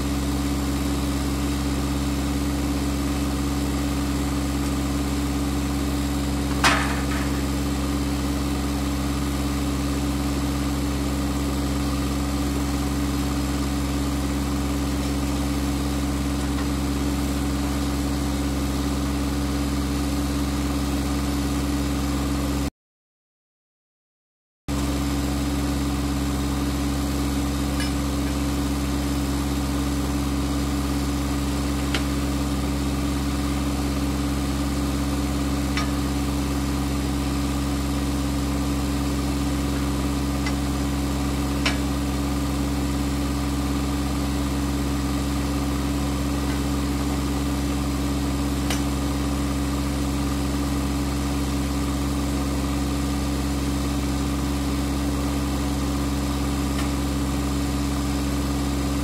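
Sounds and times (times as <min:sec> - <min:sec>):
engine idling: 0:00.0 - 0:22.6, 0:24.7 - 0:59.0.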